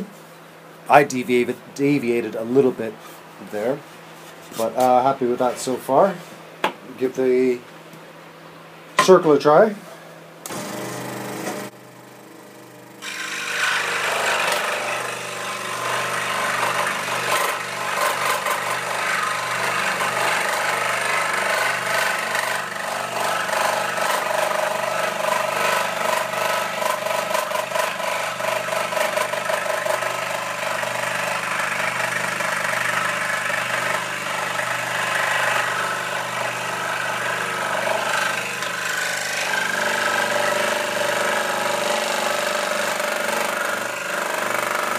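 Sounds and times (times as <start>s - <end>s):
scroll saw cutting wood: 10.5s - 11.8s, 13.0s - 44.9s.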